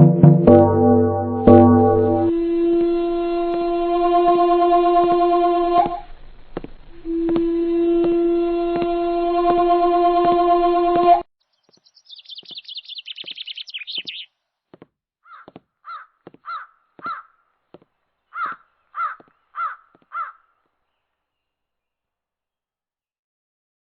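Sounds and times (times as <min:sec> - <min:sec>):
animal harsh calls: 0:15.3 - 0:17.4, 0:18.3 - 0:20.5.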